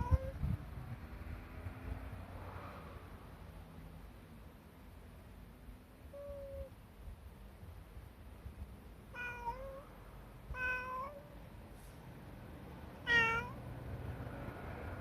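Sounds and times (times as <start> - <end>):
cat meowing: 0.0 - 0.4, 6.1 - 6.8, 9.1 - 9.9, 10.5 - 11.4, 13.0 - 13.7.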